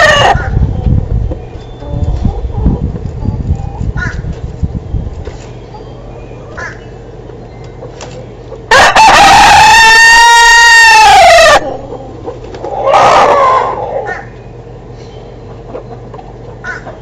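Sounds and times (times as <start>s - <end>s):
rooster crowing: 0.0s - 0.4s, 8.7s - 11.8s, 12.7s - 14.2s.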